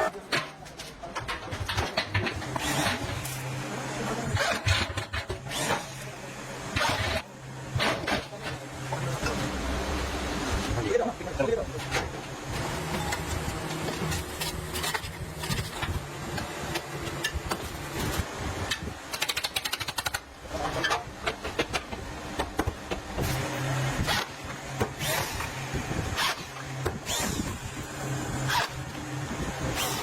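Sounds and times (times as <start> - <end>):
machinery clanks and clicks: 0.0 - 30.0.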